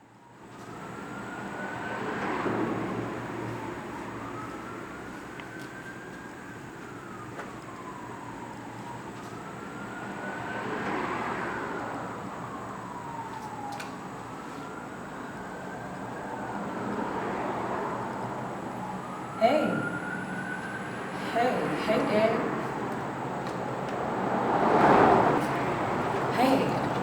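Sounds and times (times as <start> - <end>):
emergency vehicle siren wailing: 0.0 - 27.0
steady rushing noise: 20.9 - 27.0.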